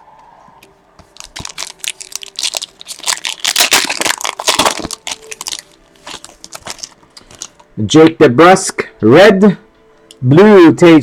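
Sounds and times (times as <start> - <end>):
wrapper crinkling and tearing: 1.0 - 7.7.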